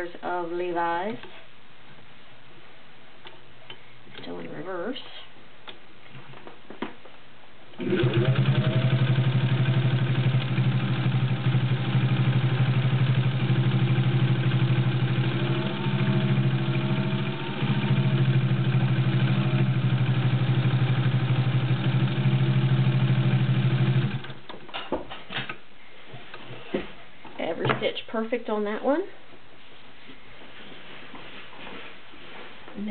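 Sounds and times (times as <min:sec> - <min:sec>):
sewing machine stitching: 0:07.8 - 0:20.4.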